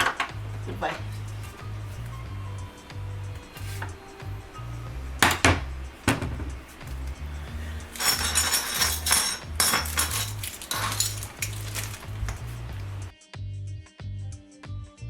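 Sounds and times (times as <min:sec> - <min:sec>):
background music with bass line: 0:00.0 - 0:15.0.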